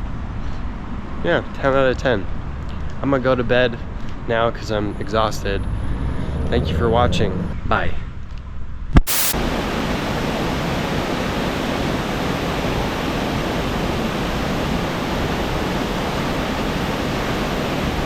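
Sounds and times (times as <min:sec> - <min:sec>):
waterfall rushing: 0:09.1 - 0:18.0.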